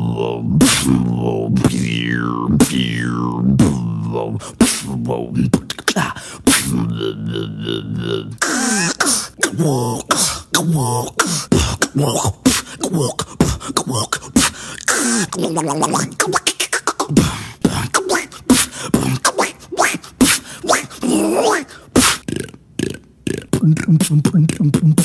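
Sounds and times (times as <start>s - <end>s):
swooping voiced tones: 0.0s - 25.0s
beatboxing clicks and pops: 5.5s - 6.7s, 10.6s - 21.0s, 22.0s - 25.0s.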